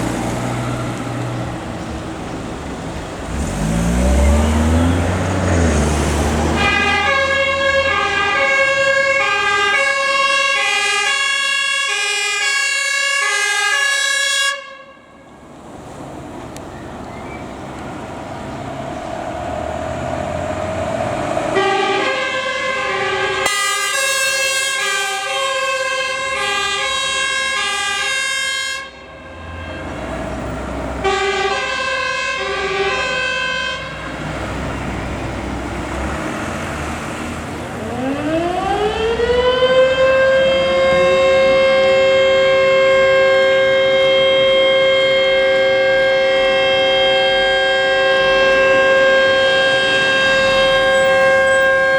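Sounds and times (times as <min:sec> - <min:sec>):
fire engine two-tone horn: 0:06.5 - 0:15.3, 0:21.5 - 0:30.2, 0:31.0 - 0:34.2, 0:37.8 - 0:51.9
fire alarm siren: 0:06.6 - 0:15.0, 0:21.6 - 0:29.7, 0:31.0 - 0:33.8, 0:37.8 - 0:51.9.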